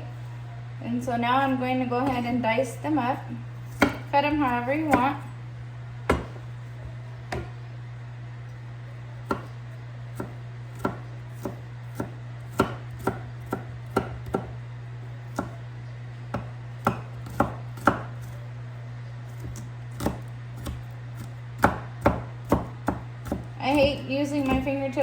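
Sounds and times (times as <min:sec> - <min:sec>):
steady low hum: 0:00.0 - 0:25.0
knife chopping on cutting board: 0:03.7 - 0:05.2, 0:06.1 - 0:06.5, 0:09.3 - 0:09.6, 0:10.2 - 0:14.6, 0:15.3 - 0:15.6, 0:16.3 - 0:18.4, 0:19.3 - 0:24.7.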